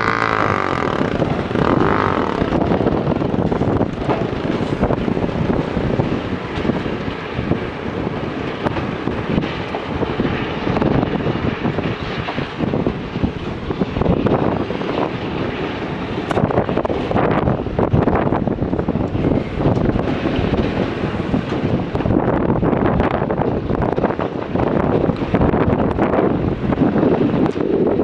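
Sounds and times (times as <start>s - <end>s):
diesel engine running: 0.0s - 10.1s
wind buffeting microphone: 0.0s - 28.0s.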